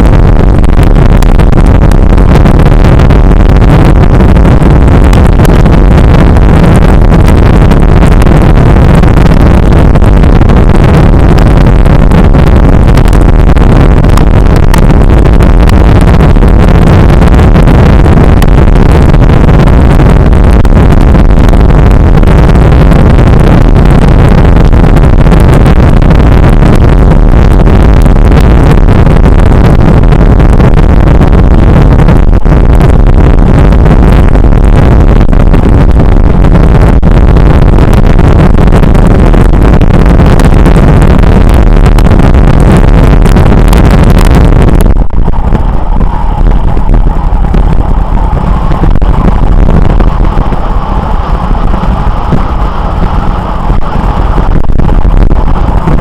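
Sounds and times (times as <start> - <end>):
wind buffeting microphone: 0.0 - 56.0.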